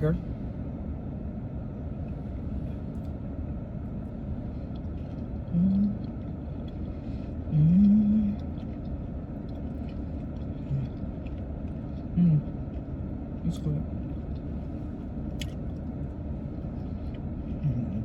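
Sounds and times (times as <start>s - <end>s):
low car rumble: 0.0s - 18.0s
faint eating clicks: 4.7s - 14.6s.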